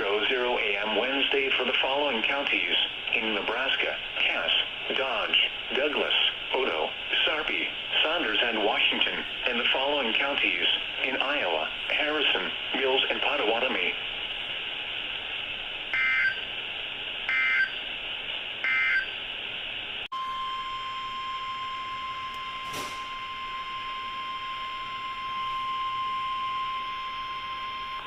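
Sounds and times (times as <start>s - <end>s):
radio hiss: 0.0s - 15.7s
steady warning alarm tone: 15.9s - 16.5s, 17.3s - 17.8s, 18.6s - 19.2s, 20.1s - 28.0s.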